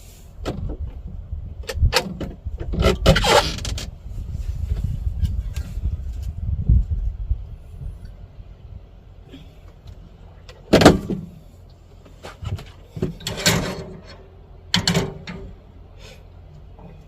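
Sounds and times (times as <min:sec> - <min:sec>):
loud clunks: 0:10.7 - 0:11.4, 0:14.7 - 0:15.6.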